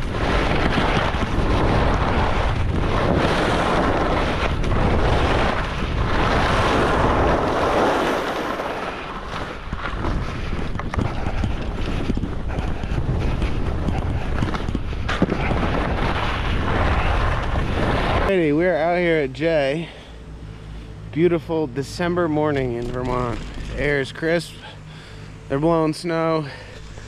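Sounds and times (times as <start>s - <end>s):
wind rushing over microphone: 0.0s - 19.9s.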